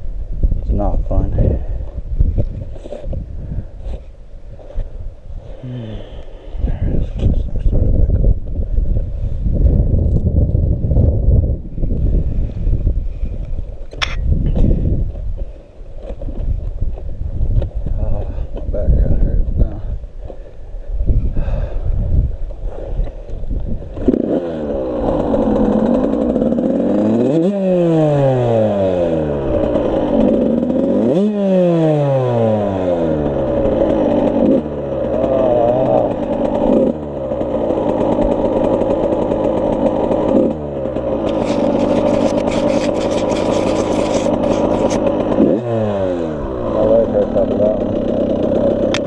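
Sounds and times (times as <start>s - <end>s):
two-stroke engine revving: 22.6s - 49.0s.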